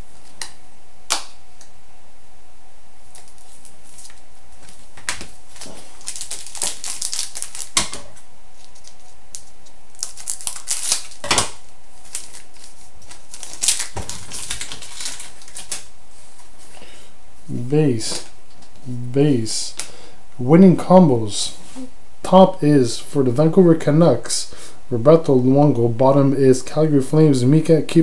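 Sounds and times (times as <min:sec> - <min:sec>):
cards clicking and rustling: 0:03.1 - 0:08.0, 0:08.6 - 0:15.9.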